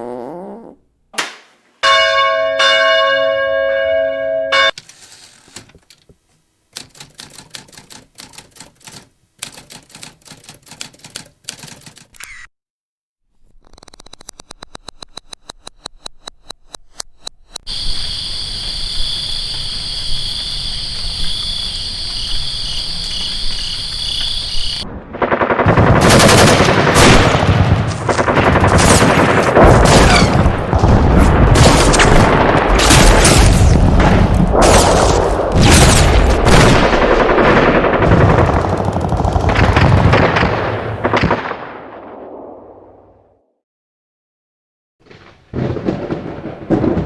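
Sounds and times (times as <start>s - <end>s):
high insect-like trilling: 17.7s - 24.8s
rapid cracks and bangs: 24.8s - 41.7s, 45.1s - 47.0s.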